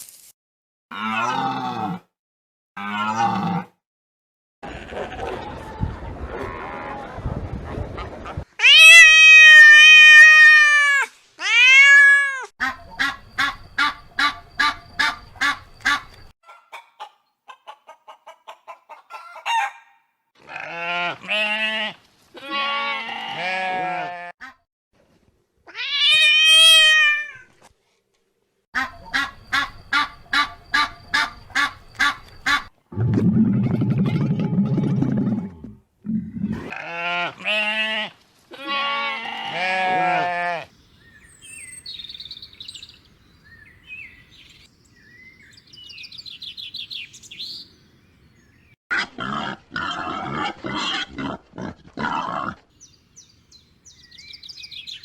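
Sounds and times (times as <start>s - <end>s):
poultry calling: 12.6s - 19.8s, 28.8s - 32.7s.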